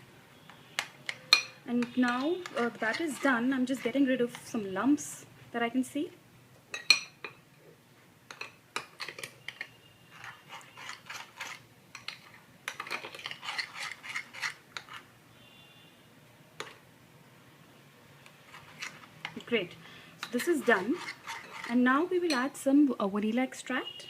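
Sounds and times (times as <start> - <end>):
utensil scraping a dish: 1.8 - 4.6, 9.0 - 15.1, 18.4 - 19.4, 20.2 - 22.4.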